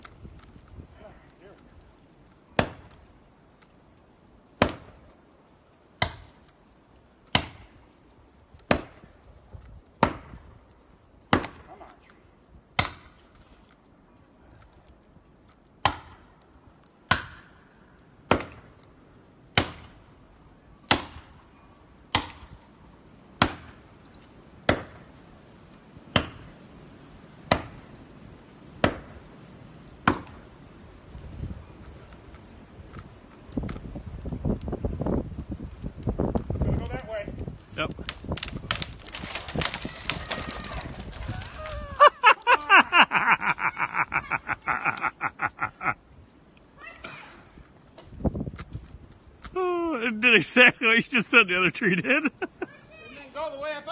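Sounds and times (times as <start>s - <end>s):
axe chopping tree trunk: 2.5s - 3.0s, 4.6s - 5.0s, 6.0s - 6.5s, 7.2s - 7.8s, 8.6s - 9.1s, 10.0s - 10.4s, 11.3s - 11.8s, 12.8s - 13.3s, 15.8s - 16.3s, 17.1s - 17.6s, 18.3s - 18.8s, 19.5s - 20.0s, 20.9s - 21.4s, 22.1s - 22.6s, 23.4s - 23.8s, 24.6s - 25.1s, 26.1s - 26.5s, 27.4s - 27.8s, 28.8s - 29.2s, 30.0s - 30.5s.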